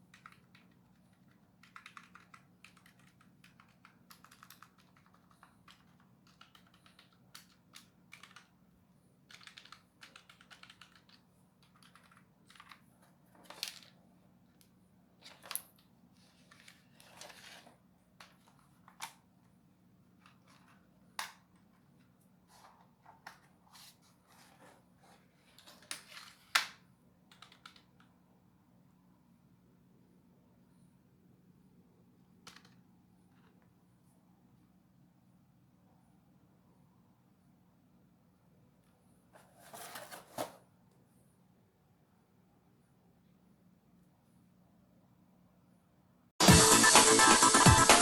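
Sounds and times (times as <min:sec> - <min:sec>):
keyboard typing clatter: 0:00.0 - 0:08.6, 0:09.3 - 0:12.9, 0:27.3 - 0:28.1.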